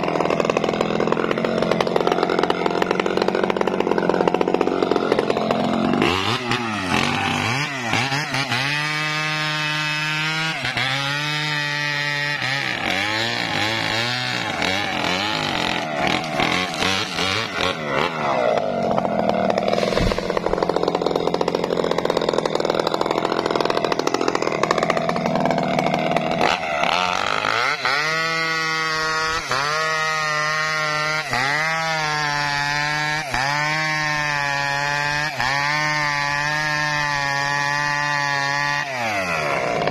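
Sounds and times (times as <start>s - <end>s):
chainsaw running: 0.0s - 39.9s.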